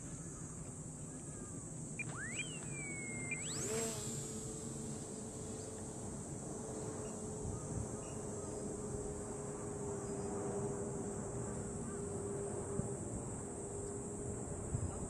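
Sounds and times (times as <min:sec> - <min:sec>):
small electric motor whining: 0:02.0 - 0:07.7.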